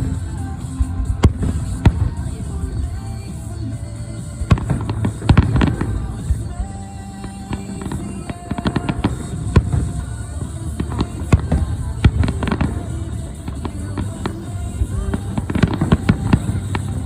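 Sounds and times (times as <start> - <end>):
background music: 0.0 - 17.0
fireworks bangs and crackling: 0.0 - 17.0.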